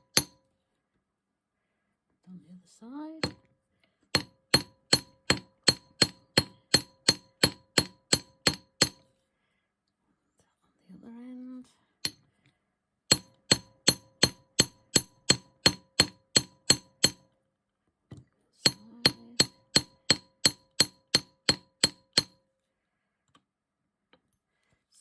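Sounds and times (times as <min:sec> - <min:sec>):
hammer striking metal wire: 0:00.0 - 0:00.4, 0:04.2 - 0:09.0, 0:13.1 - 0:17.3, 0:18.6 - 0:22.4.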